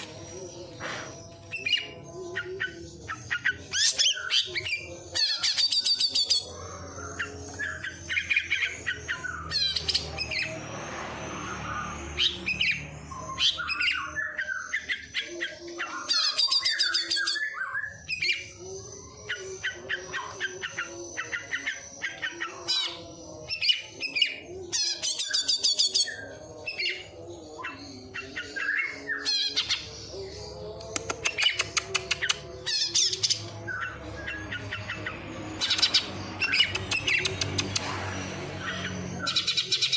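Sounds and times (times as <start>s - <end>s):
songbird singing chirps and trills: 0.0s - 39.9s.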